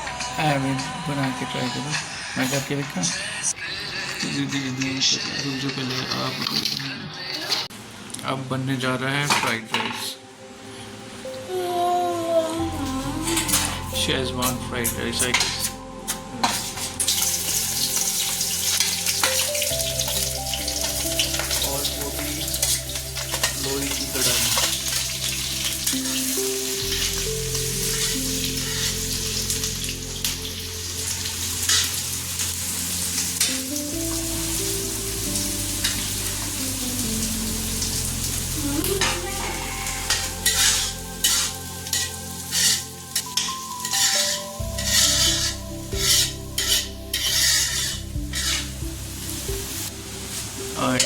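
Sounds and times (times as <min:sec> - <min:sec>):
food sizzling in a pan: 0:09.1 - 0:51.0
spatula scraping a pan: 0:16.4 - 0:29.5, 0:31.7 - 0:32.0, 0:39.8 - 0:48.8.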